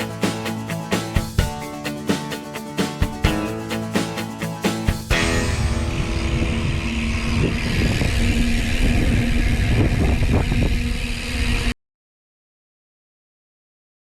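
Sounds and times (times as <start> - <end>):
vehicle engine running loudly: 3.1 - 11.7.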